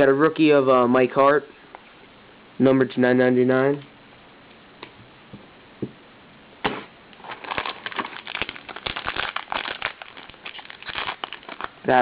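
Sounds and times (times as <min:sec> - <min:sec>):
sharp crackle: 0:06.6 - 0:12.0
card pack wrapper crinkling: 0:07.2 - 0:12.0.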